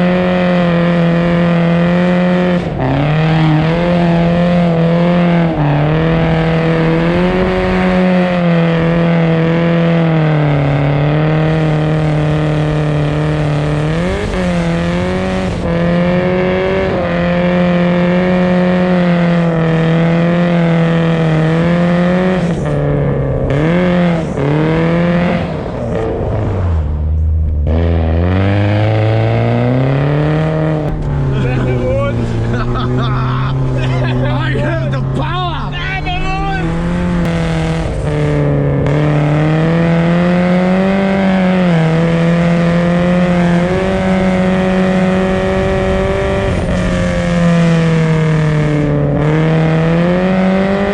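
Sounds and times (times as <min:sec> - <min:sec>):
car engine at high revs: 0:00.0 - 0:50.9.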